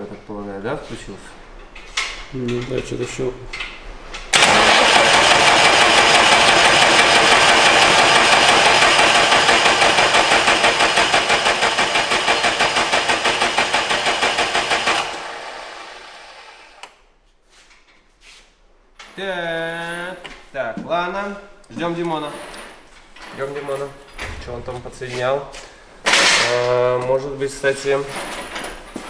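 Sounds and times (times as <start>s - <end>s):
diesel engine cranking: 1.3s - 16.9s.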